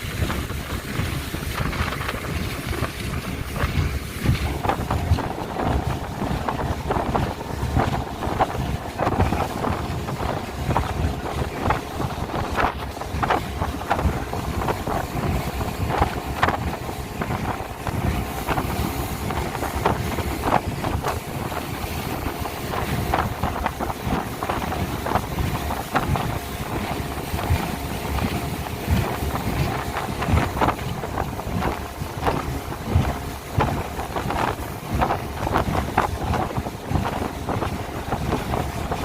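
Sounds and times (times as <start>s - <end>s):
hull slapping on waves: 0.0s - 39.0s
speedboat engine drone: 0.0s - 39.0s
wind buffeting microphone: 0.0s - 39.0s.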